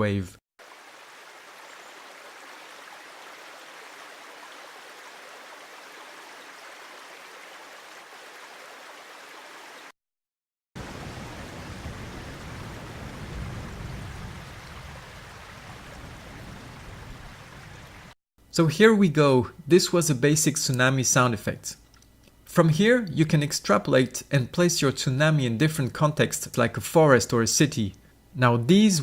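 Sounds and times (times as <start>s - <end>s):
rushing river water: 0.6s - 9.9s, 10.8s - 18.1s.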